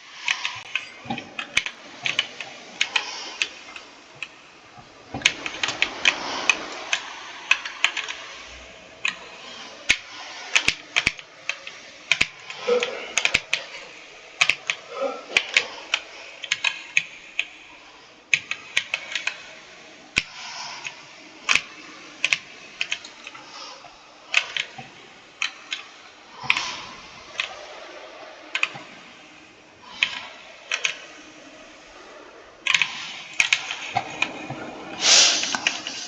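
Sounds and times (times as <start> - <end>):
computer keyboard key clicks: 0.2 - 3.6, 5.2 - 8.3, 9.9 - 13.8, 14.4 - 17.6, 18.3 - 19.5, 20.2 - 23.4, 28.5 - 28.8, 30.0 - 31.0, 32.7 - 34.4.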